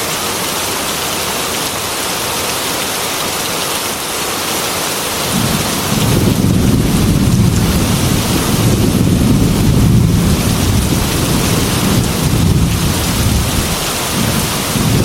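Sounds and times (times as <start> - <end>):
heavy rain pouring: 0.0 - 15.0
low rolling thunder: 5.3 - 15.0.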